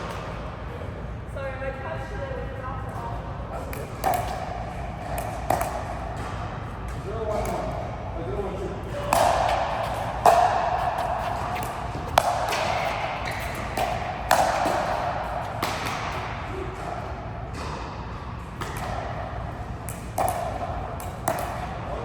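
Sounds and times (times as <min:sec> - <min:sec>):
ball and racket strikes: 0:03.7 - 0:08.1, 0:08.8 - 0:21.8.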